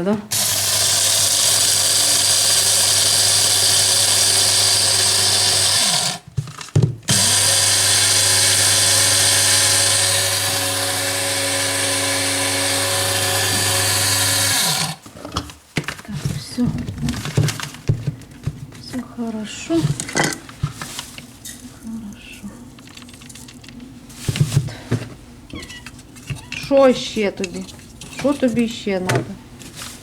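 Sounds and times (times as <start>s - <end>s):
coffee grinder motor whine: 0.3s - 6.2s, 7.1s - 15.0s.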